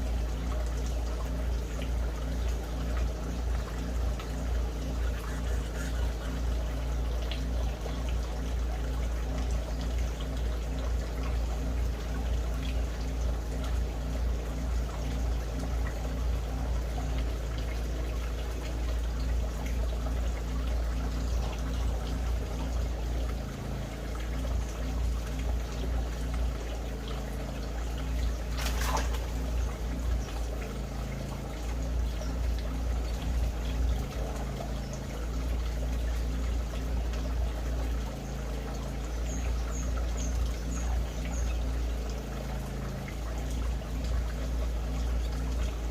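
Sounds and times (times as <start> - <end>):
low hum: 0.0 - 45.9
water trickling: 0.0 - 45.9
small birds chirping: 0.4 - 8.8, 24.2 - 45.9.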